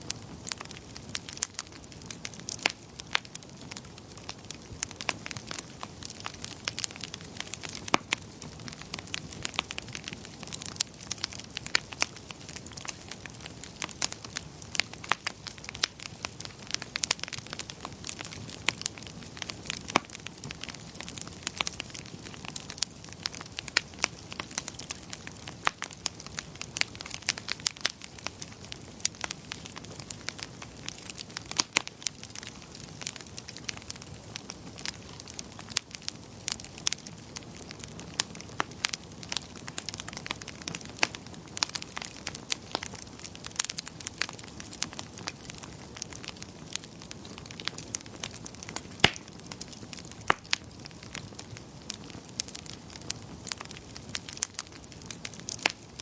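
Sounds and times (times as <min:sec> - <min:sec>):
fire crackling and popping: 0:00.0 - 0:56.0.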